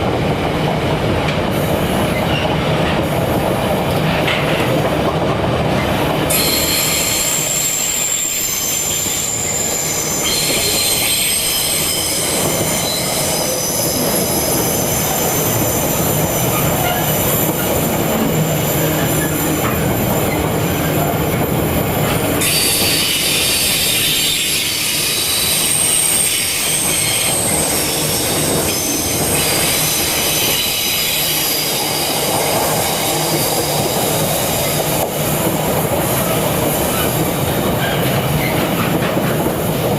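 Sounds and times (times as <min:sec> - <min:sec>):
train wheels squealing: 0:02.0 - 0:02.7, 0:06.3 - 0:39.6.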